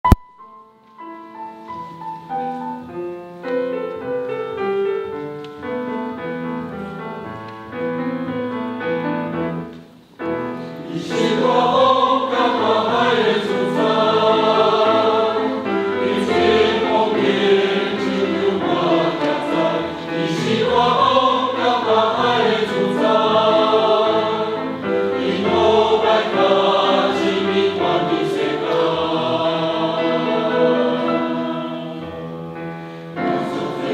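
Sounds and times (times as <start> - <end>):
instrumental accompaniment: 0.0 - 33.9
choir singing a hymn: 10.3 - 33.9.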